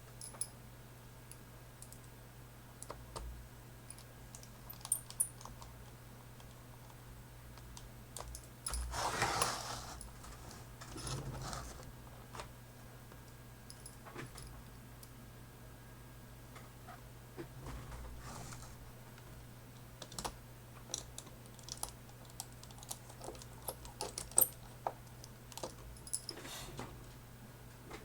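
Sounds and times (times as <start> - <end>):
scraping rustle: 8.8 - 11.9, 17.6 - 18.8.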